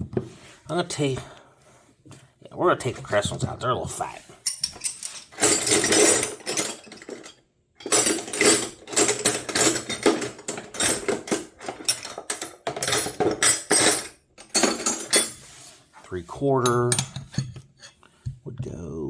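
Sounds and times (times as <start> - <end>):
steel wrenches clinking: 4.4 - 15.8, 16.6 - 18.0.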